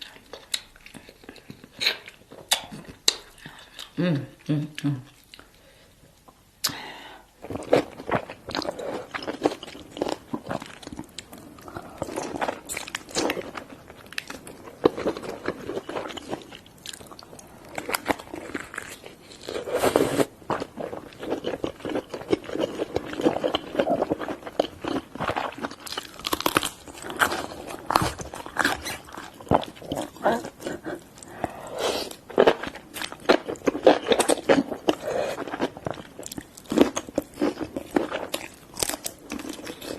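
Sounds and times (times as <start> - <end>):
chewing and mouth sounds: 20.5 - 39.9
crab shell cracking and crunching: 22.3 - 30.2.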